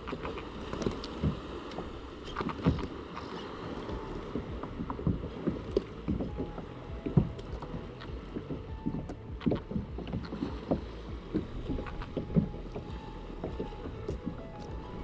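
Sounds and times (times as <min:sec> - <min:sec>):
paddle knocking against hull: 0:00.0 - 0:15.0
water lapping against kayak hull: 0:00.0 - 0:15.0.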